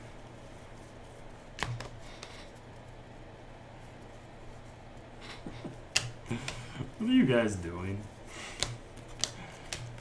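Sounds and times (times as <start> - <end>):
low steady hum: 0.0 - 10.0
sharp card tap: 1.6 - 2.0, 5.9 - 6.6, 8.5 - 10.0
trading cards handled: 8.4 - 10.0.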